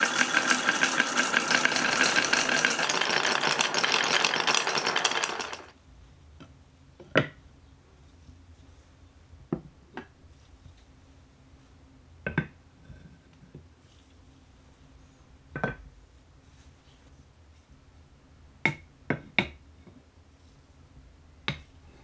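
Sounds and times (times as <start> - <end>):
marbles rattling down wooden slopes: 0.0 - 5.7.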